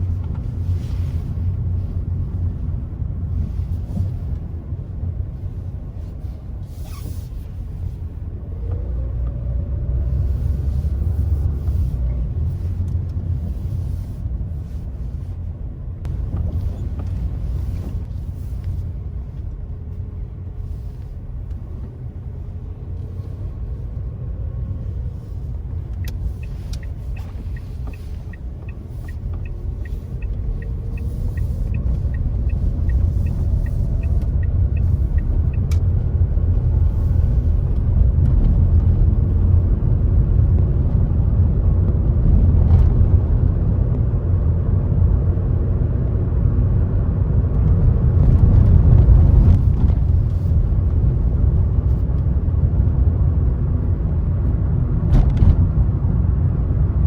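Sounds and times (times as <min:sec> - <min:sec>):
turn signal ticking: 0:00.0 - 0:06.6, 0:16.0 - 0:40.8, 0:47.5 - 0:53.1
car engine and tyre rumble: 0:00.0 - 0:57.0.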